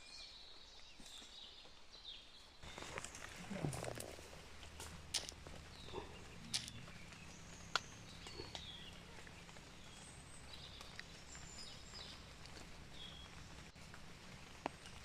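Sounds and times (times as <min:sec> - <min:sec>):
bird chirps and calls: 0:02.1 - 0:13.7
steady low rumble: 0:02.6 - 0:15.0.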